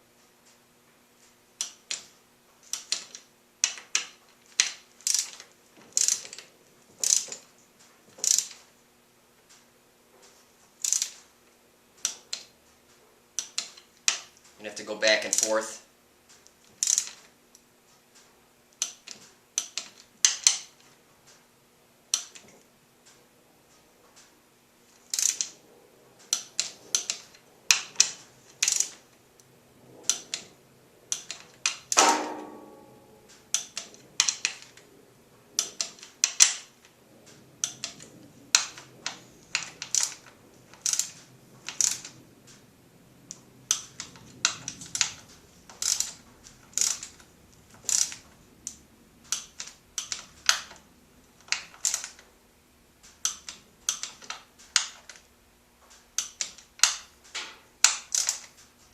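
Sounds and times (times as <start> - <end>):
socket wrench clicking: 1.6 - 2.0, 6.0 - 6.4, 7.0 - 7.4, 8.2 - 8.6, 10.8 - 11.2, 13.4 - 14.3, 16.8 - 17.2, 18.8 - 20.7, 26.3 - 28.9, 33.5 - 34.7, 37.6 - 42.2, 43.7 - 47.2, 47.8 - 50.8, 51.4 - 52.2, 53.2 - 55.2, 56.2 - 57.1, 57.8 - 58.5
metallic clank: 32.0 - 33.3.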